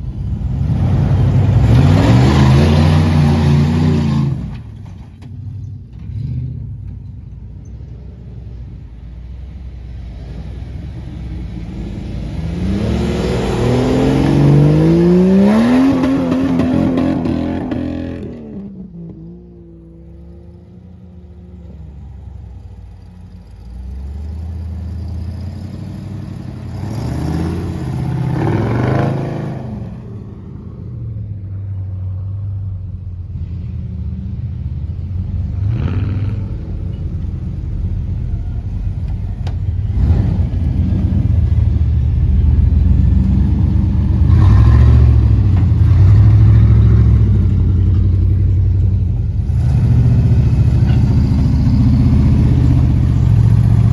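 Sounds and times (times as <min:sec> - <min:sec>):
off-road vehicle engine revving: 0:00.0 - 0:04.8, 0:10.2 - 0:20.8, 0:23.4 - 0:30.1, 0:33.4 - 0:38.1, 0:38.9 - 0:53.9.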